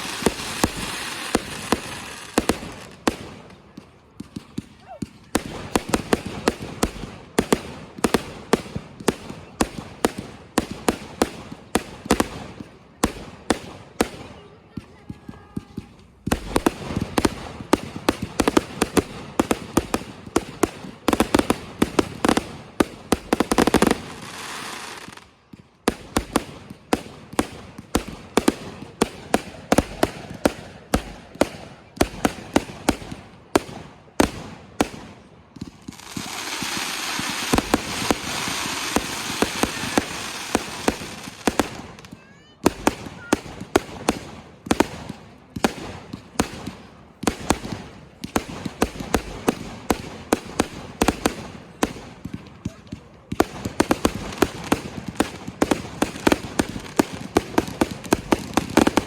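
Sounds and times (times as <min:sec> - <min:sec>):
fireworks spraying hiss: 0:00.0 - 0:03.0, 0:23.2 - 0:25.2, 0:35.7 - 0:42.1
fireworks cracking and banging: 0:00.0 - 0:59.0.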